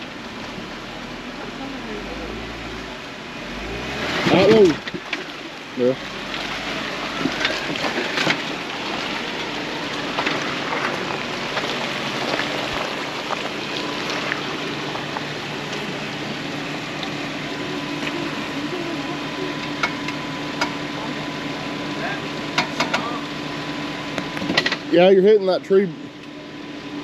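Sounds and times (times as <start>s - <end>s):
engine running at low speed: 0.0s - 27.0s
rocks and twigs cracking under wheels: 4.6s - 17.3s.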